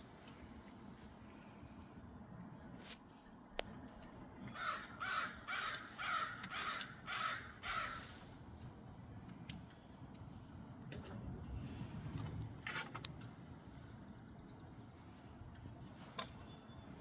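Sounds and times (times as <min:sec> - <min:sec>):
crow cawing: 0:04.5 - 0:08.2.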